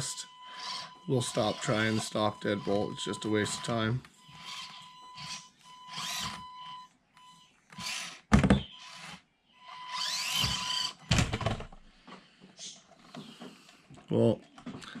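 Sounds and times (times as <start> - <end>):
toy car electric motor whining: 0.0 - 6.8, 7.7 - 11.4
loud thumps: 8.3 - 8.8.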